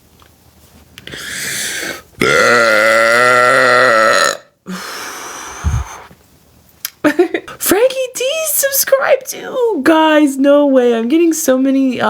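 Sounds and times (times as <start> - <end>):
woman belching: 2.2 - 4.5
soft breathy sound: 4.7 - 6.2.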